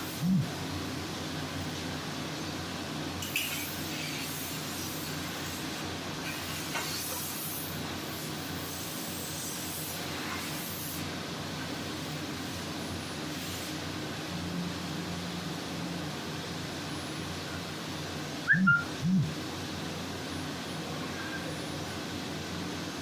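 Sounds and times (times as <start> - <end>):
machinery hum: 0.0 - 3.2, 14.0 - 23.0.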